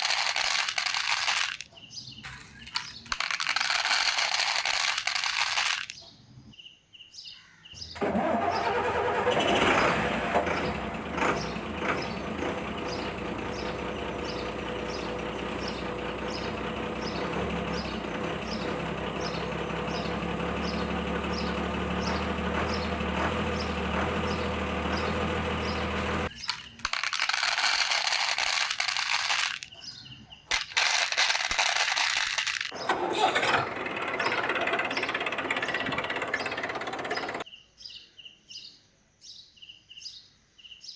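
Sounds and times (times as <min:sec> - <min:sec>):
toy vehicle motor humming: 0:00.0 - 0:06.0, 0:17.0 - 0:29.7, 0:30.5 - 0:37.4
regular ticking: 0:02.5 - 0:06.0, 0:33.8 - 0:37.4.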